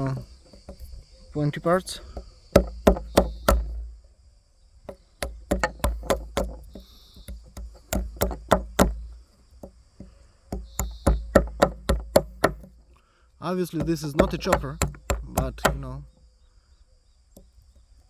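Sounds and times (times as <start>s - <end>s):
crickets chirping: 0.0s - 18.0s
knife chopping wood: 2.0s - 4.0s, 4.9s - 12.8s, 13.7s - 16.0s.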